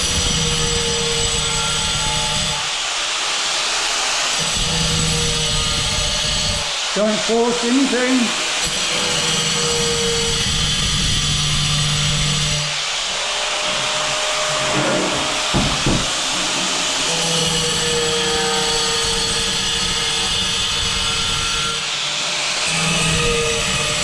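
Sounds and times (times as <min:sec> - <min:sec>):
angle grinder cutting tile: 0:00.0 - 0:24.0
sharp knocks: 0:13.6 - 0:17.1.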